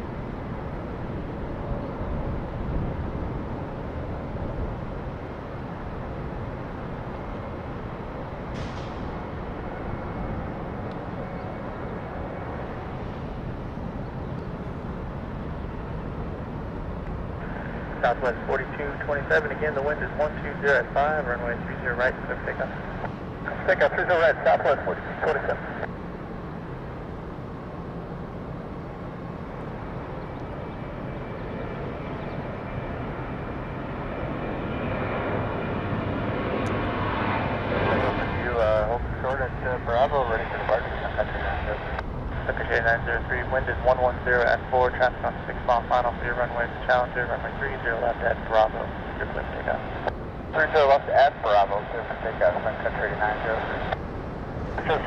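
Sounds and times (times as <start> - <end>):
jet engines rumbling: 0.0 - 55.0
faint high whine: 6.6 - 55.0.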